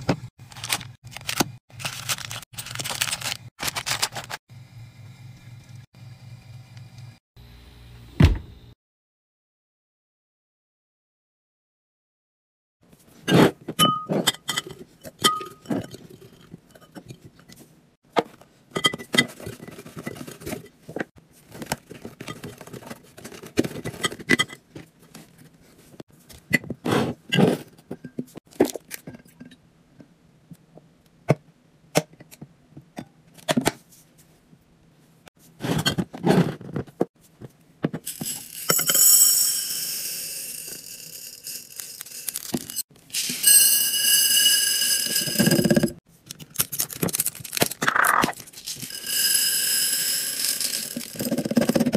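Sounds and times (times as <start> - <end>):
jars and bottles clinking: 13.7 - 17.4, 38.0 - 46.0, 48.6 - 51.9.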